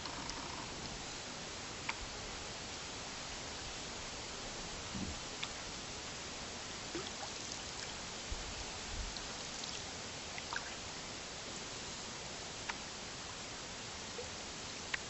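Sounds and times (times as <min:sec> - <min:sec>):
small ticks: 0:00.0 - 0:01.0, 0:12.6 - 0:12.8
steady hiss: 0:00.0 - 0:15.0
water dripping from paddle: 0:06.9 - 0:08.0.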